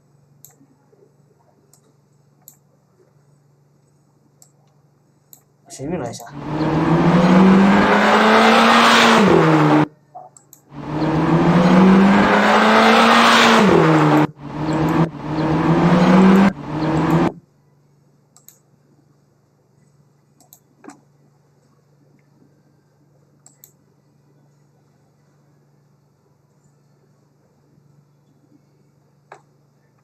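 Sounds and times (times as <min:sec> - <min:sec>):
faint hum: 0:00.0 - 0:07.8, 0:14.2 - 0:30.0
car engine revving: 0:06.3 - 0:09.9, 0:10.7 - 0:17.4
faint clicks: 0:18.3 - 0:18.6, 0:20.4 - 0:21.0.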